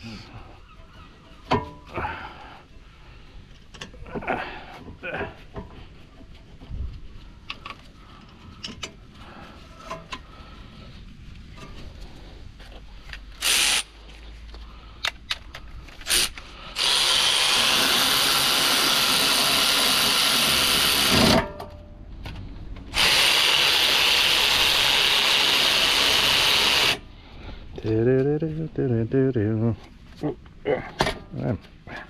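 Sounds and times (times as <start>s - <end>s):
power drill driving bolts: 13.4s - 13.9s, 16.0s - 21.5s, 22.9s - 27.0s.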